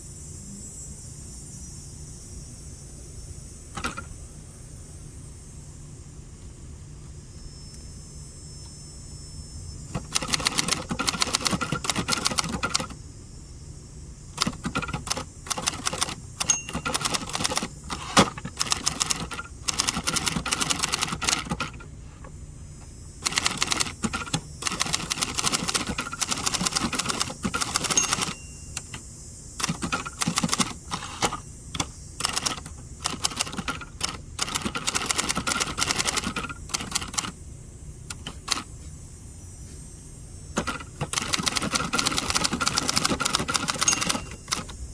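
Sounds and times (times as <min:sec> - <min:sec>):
manual typewriter typing: 0:09.9 - 0:13.0, 0:14.4 - 0:21.9, 0:23.2 - 0:29.0, 0:29.6 - 0:37.4, 0:38.1 - 0:38.7, 0:40.6 - 0:44.8.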